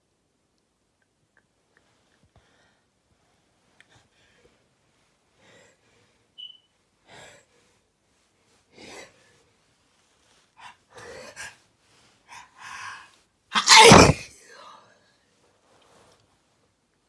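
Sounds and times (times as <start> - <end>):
brief high squeak: 6.4 - 6.7.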